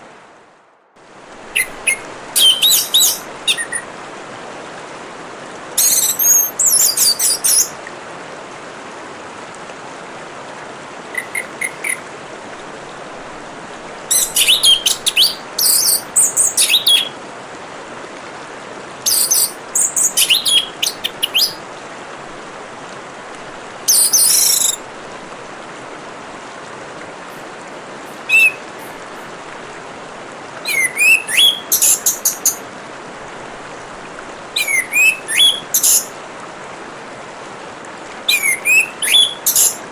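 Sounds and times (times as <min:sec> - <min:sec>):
water trickling: 0:01.0 - 0:04.2, 0:05.8 - 0:07.9, 0:10.8 - 0:17.2, 0:19.0 - 0:36.7
thrush singing: 0:01.6 - 0:03.8, 0:14.1 - 0:17.1, 0:27.3 - 0:29.3, 0:30.7 - 0:32.6.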